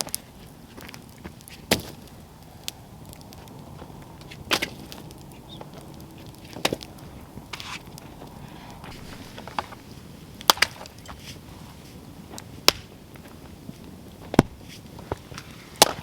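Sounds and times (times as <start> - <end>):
hatchet chopping firewood: 8.9 - 11.1.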